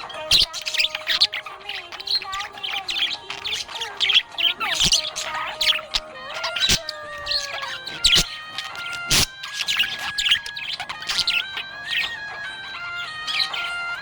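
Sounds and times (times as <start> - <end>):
budgerigars chirping and warbling: 0.0 - 14.0.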